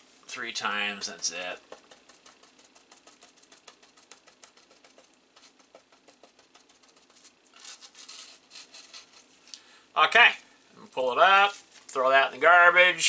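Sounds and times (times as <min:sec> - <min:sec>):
brush tapping and rustling: 0:01.0 - 0:09.6.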